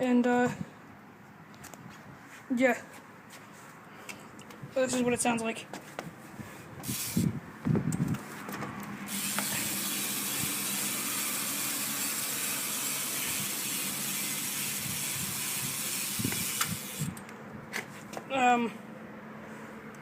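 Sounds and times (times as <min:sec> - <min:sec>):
bicycle hub ratchet buzzing: 0:06.8 - 0:07.3, 0:09.1 - 0:17.2.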